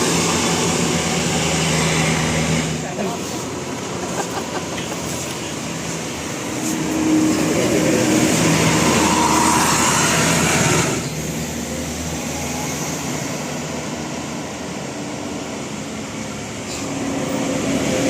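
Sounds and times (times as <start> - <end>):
vehicle passing by: 5.1 - 15.0.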